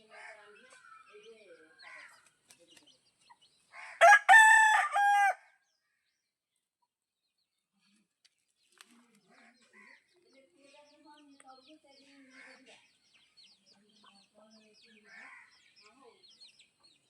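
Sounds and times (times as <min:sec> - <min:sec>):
rooster crowing: 0:04.0 - 0:05.4.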